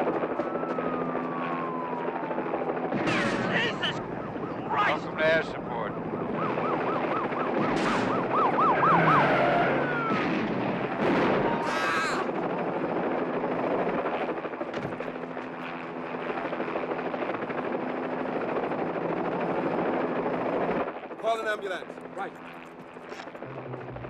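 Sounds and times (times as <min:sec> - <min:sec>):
police siren yelping: 0:00.0 - 0:12.3
helicopter humming overhead: 0:00.0 - 0:24.0.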